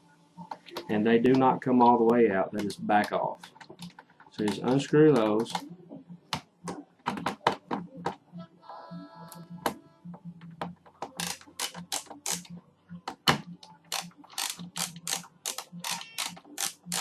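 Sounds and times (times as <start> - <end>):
screwdriver ratchet-like clicks: 11.2 - 12.5, 13.9 - 17.0.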